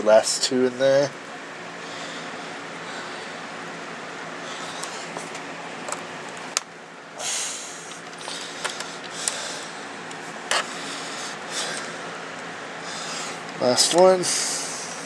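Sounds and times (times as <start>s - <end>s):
background hum: 0.0s - 15.0s.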